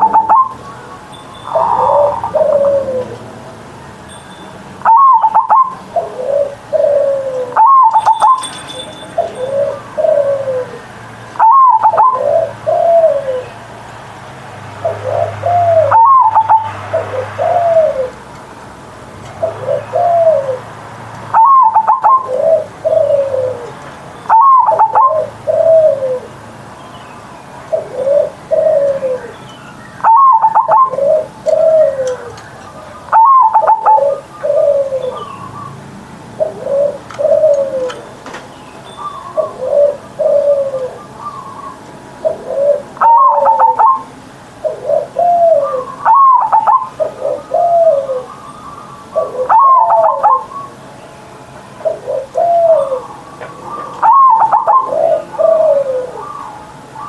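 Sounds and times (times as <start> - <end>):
dove cooing: 0.0 - 3.4, 4.8 - 13.7, 14.8 - 18.2, 19.2 - 20.7, 21.3 - 26.4, 27.7 - 29.4, 30.0 - 38.2, 39.0 - 50.9, 51.6 - 57.0.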